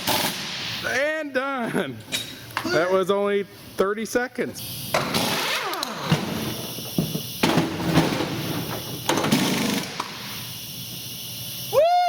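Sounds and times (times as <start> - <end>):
impact gun hammering: 6.0 - 10.0.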